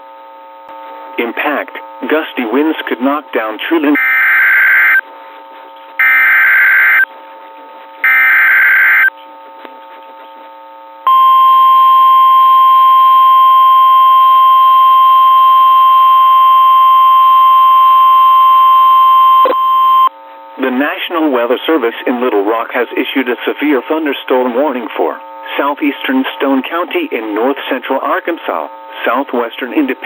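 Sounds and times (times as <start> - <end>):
steady warning alarm tone: 2.0 - 5.1, 6.0 - 7.1, 8.0 - 9.1, 11.1 - 20.1
digital data screech bursts: 6.0 - 7.0, 8.1 - 9.1.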